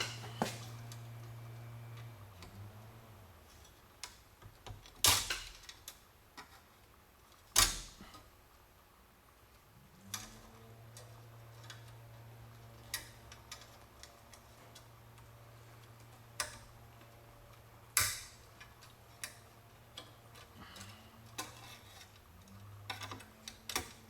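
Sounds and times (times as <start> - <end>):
metal parts clicking and tapping: 12.6 - 24.0.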